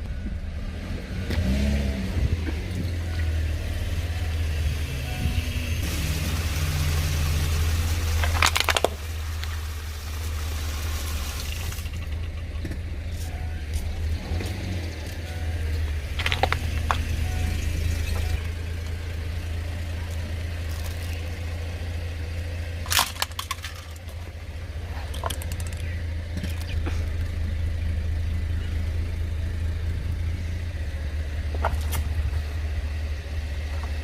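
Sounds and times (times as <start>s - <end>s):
car engine running: 0.0s - 34.0s
objects cracking under tyres: 8.1s - 9.6s, 16.1s - 17.2s, 20.0s - 21.6s, 22.8s - 27.3s.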